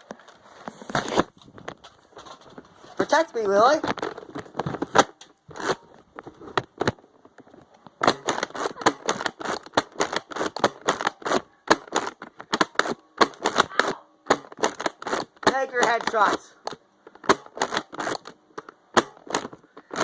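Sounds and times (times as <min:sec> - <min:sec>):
foam-dart blasters clacking: 0:08.0 - 0:16.4, 0:17.2 - 0:18.3, 0:18.9 - 0:20.0.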